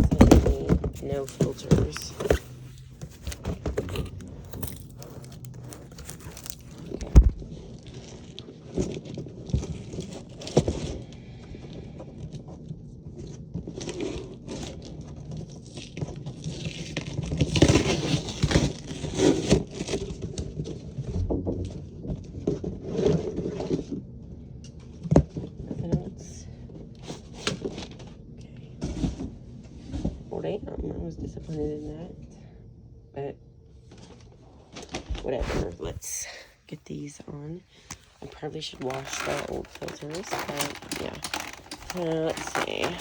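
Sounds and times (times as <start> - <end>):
knocks of plastic parts: 0.0 - 7.4, 37.8 - 43.0
plastic packaging crinkling: 0.0 - 7.4, 37.7 - 43.0
plastic parts scraping: 0.0 - 7.4, 35.4 - 37.1, 37.7 - 43.0.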